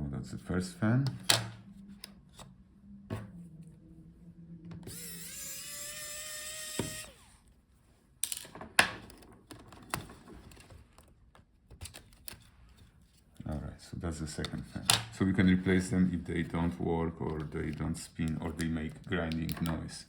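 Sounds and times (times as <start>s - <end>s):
electric screwdriver whining: 4.8s - 7.5s.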